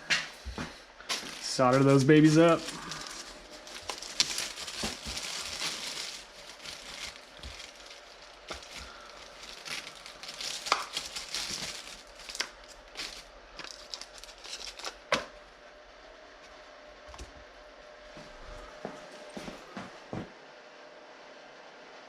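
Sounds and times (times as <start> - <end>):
wires and tools rustling and clicking: 0.0 - 15.4
faint steady hum: 0.0 - 22.0.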